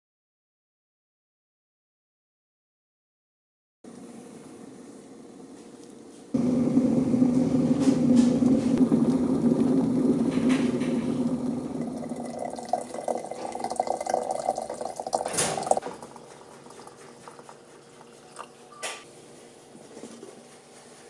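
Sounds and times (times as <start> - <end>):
water pouring and bubbling: 6.4 - 17.6.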